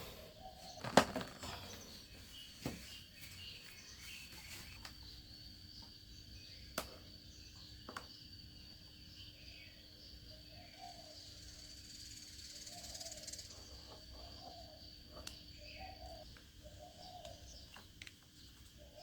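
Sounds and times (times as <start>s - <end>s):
soft wavering calls: 10.3s - 17.8s.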